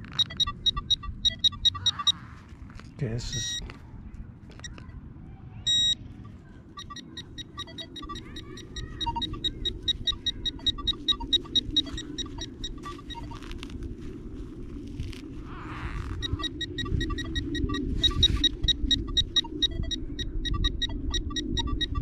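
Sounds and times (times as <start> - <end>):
pinpointer rapid high beeps: 0.0 - 2.2, 3.3 - 3.6, 4.6 - 4.9, 5.7 - 6.0, 6.7 - 13.5, 16.1 - 22.0.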